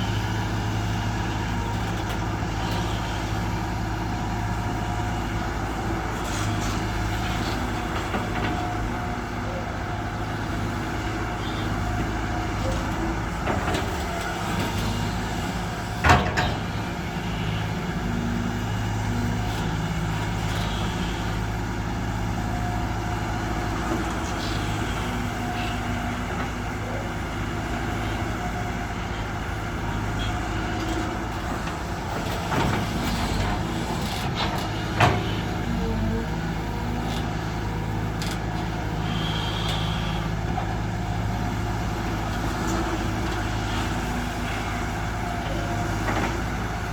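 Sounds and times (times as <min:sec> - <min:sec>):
heavy diesel engines running: 0:00.0 - 0:46.9.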